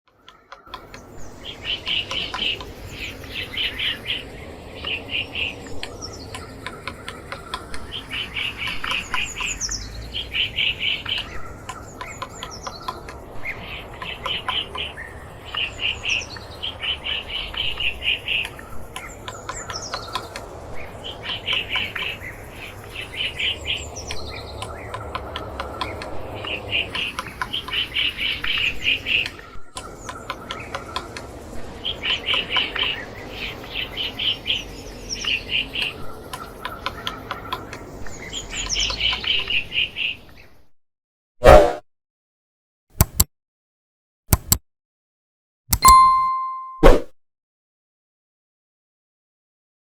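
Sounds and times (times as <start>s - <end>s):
woodpecker tapping: 43.0s - 43.3s, 44.3s - 44.6s.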